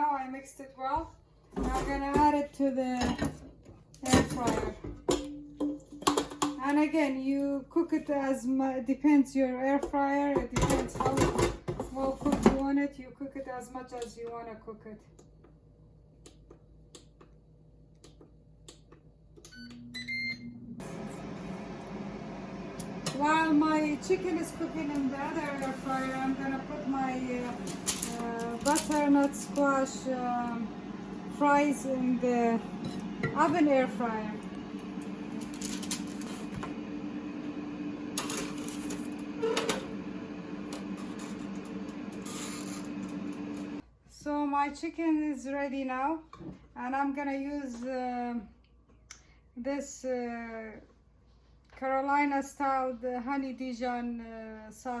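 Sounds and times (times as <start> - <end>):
air fryer fan whooshing: 20.0 - 43.8.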